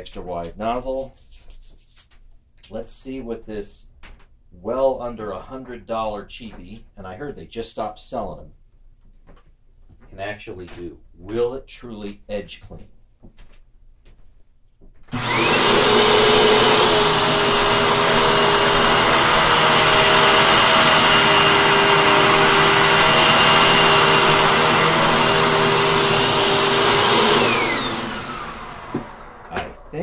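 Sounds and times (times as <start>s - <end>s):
vacuum cleaner running on carpet: 15.1s - 30.0s
vacuum motor winding down: 15.1s - 30.0s.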